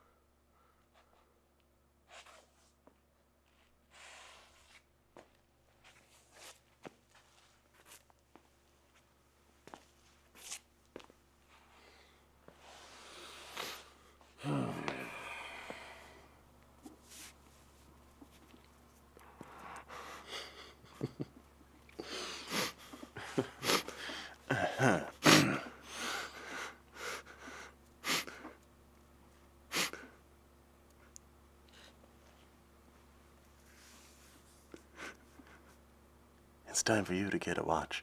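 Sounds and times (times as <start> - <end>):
person breathing heavily and gasping: 11.7 - 16.4, 19.2 - 21.2, 21.9 - 28.6
falling groan: 14.4 - 16.1.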